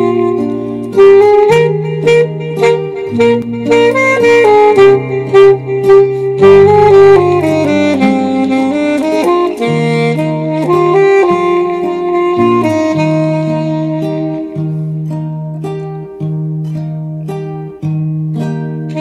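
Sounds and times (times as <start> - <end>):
saxophone melody: 0.0 - 19.0.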